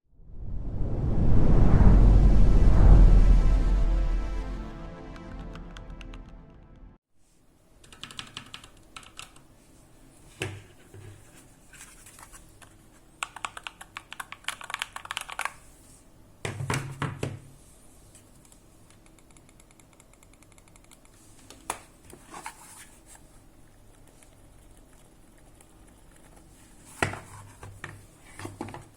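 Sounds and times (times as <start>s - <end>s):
mechanical keyboard typing: 7.8s - 9.5s, 13.2s - 15.6s, 18.9s - 21.1s.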